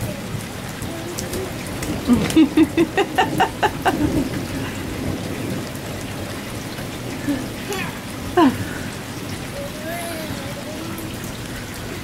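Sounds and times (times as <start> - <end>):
steady rain falling: 0.0 - 12.0
toddler making short repeated sounds: 9.6 - 11.3.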